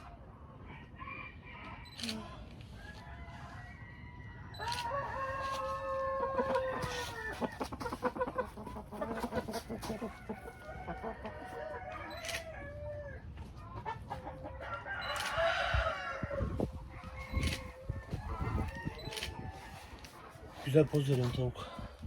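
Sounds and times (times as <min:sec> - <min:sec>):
rooster crowing: 0:02.8 - 0:07.4, 0:14.6 - 0:20.1
chickens clucking: 0:04.6 - 0:22.0.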